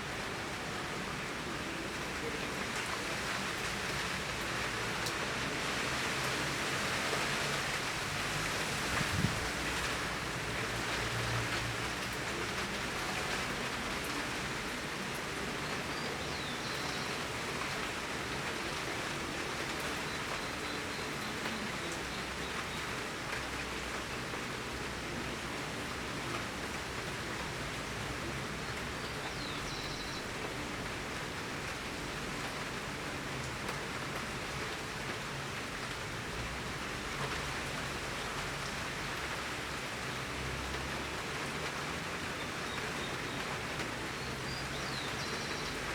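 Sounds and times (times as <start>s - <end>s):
heavy rain pouring: 0.0s - 45.9s.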